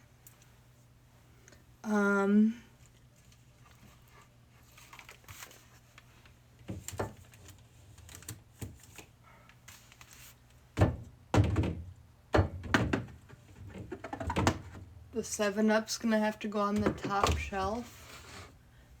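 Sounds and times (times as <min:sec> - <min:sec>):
bottles knocking on fridge shelves: 0:10.8 - 0:14.8, 0:16.8 - 0:17.6.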